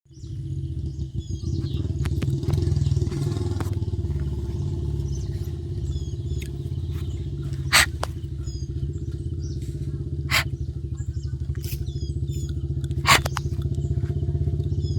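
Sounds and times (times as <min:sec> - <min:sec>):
engine idling: 0:00.1 - 0:14.9.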